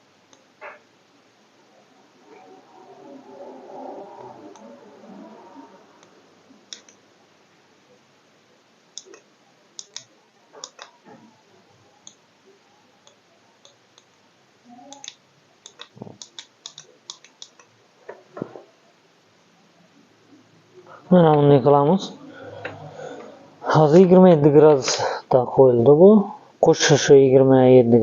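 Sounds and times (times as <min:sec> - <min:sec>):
tactile buttons clicking: 0:09.0 - 0:09.2, 0:09.8 - 0:10.9, 0:14.9 - 0:17.7.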